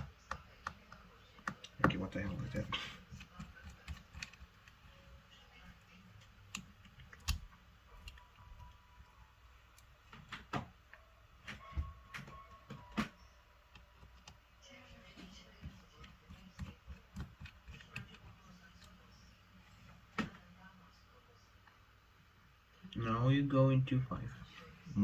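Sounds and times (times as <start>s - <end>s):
small tools clicking and tapping: 3.2s - 4.8s.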